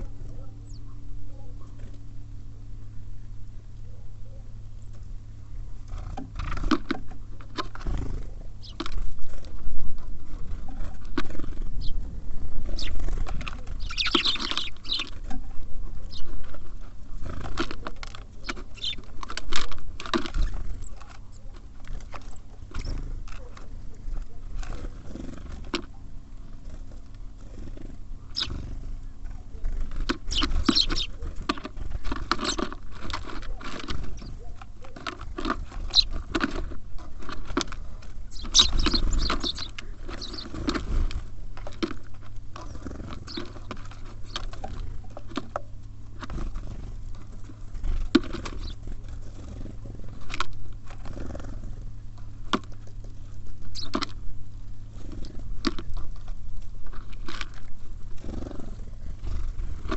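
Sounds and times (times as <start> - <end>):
birds chirping: 0.0 - 57.0
steady low hum: 0.0 - 59.9
beaks tapping on bird feeder: 8.6 - 9.6, 12.6 - 16.7, 17.4 - 24.3, 28.3 - 28.5, 29.8 - 46.6, 47.2 - 49.3, 53.6 - 54.2.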